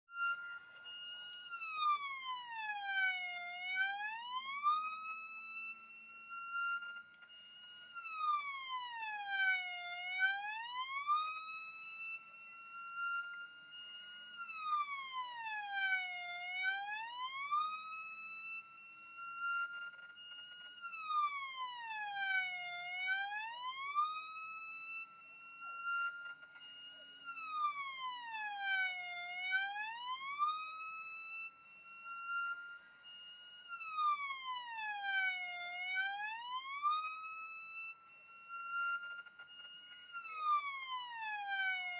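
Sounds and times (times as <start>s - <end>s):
fire engine siren wailing: 8.0s - 11.3s, 14.4s - 17.8s, 26.4s - 30.7s, 33.8s - 37.1s, 40.3s - 41.9s.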